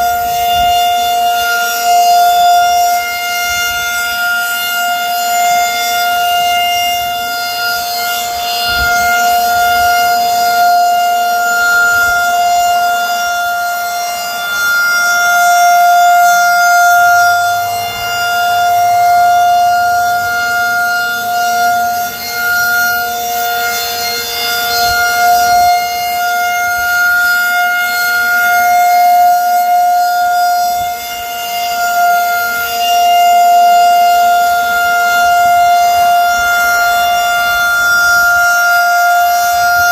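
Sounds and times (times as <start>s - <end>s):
tornado siren steady tone: 0.0s - 39.9s.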